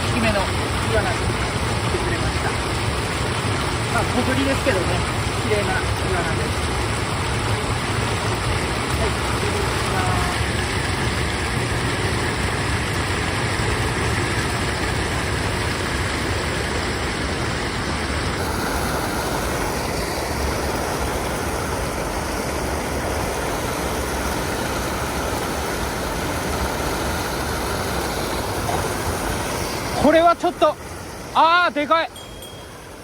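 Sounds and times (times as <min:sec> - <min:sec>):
stream water rushing: 0:00.0 - 0:33.0.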